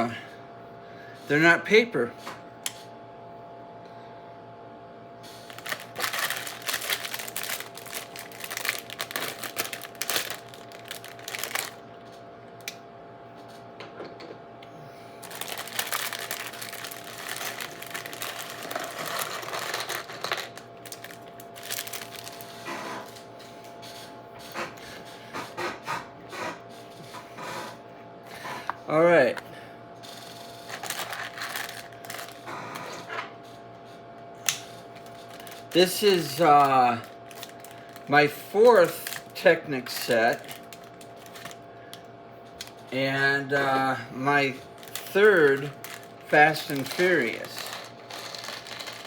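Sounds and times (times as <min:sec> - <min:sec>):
plastic bags crinkling: 0:05.4 - 0:11.8, 0:15.2 - 0:22.6, 0:30.7 - 0:32.5, 0:34.9 - 0:41.6, 0:44.5 - 0:49.0.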